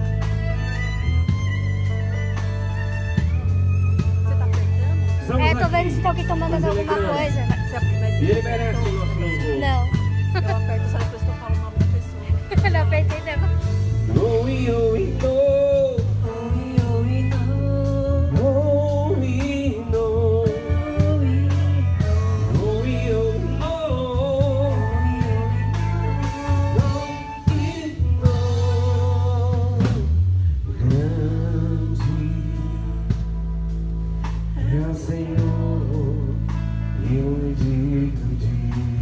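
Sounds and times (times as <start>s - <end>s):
band with bass and drums: 0.0s - 39.0s
person singing: 13.2s - 30.1s.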